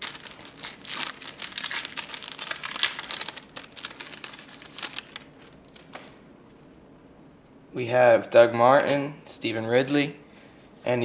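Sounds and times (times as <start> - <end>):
wrapper tearing and crinkling: 0.0 - 6.2.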